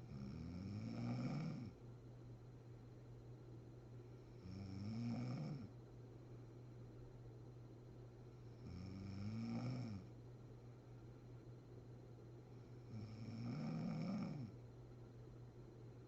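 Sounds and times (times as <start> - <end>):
steady low hum: 0.0 - 16.0
woman snoring: 0.1 - 1.8, 4.4 - 5.7, 8.6 - 10.1, 12.9 - 14.6.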